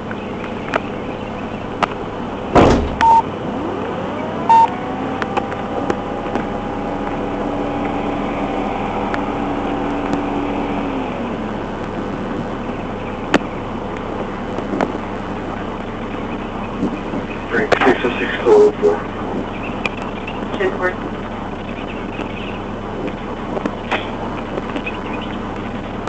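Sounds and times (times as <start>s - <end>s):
car engine and road noise: 0.0s - 26.0s
rising siren whine: 0.7s - 25.7s
loud thud: 2.5s - 3.1s
short electronic beeps: 3.0s - 3.3s, 4.5s - 4.7s.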